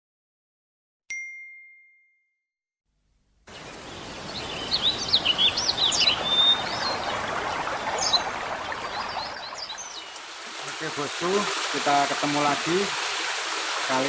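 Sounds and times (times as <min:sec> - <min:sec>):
small birds chirping: 0:03.5 - 0:12.8
running water: 0:03.5 - 0:14.0.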